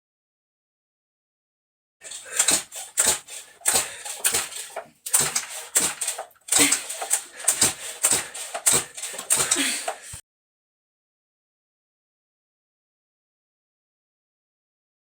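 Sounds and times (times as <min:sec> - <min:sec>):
chainsaw starter cord pulled: 0:02.0 - 0:10.2
engine turning over: 0:02.0 - 0:10.2.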